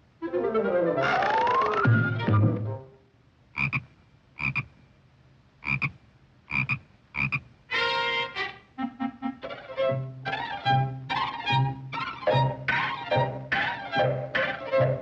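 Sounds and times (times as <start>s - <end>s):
cartoon music: 0.2s - 3.0s, 7.7s - 15.0s
short croaks: 3.5s - 4.9s, 5.6s - 7.6s.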